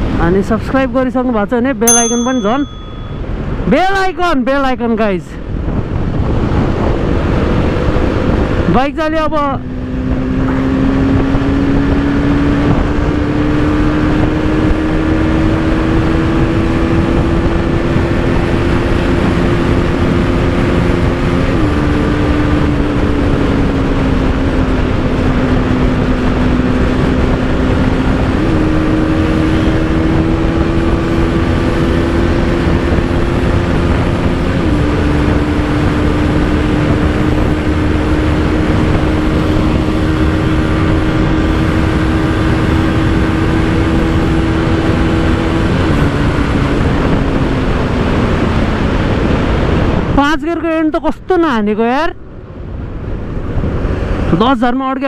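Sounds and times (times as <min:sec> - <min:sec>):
motorcycle engine revving high: 0:09.5 - 0:50.2.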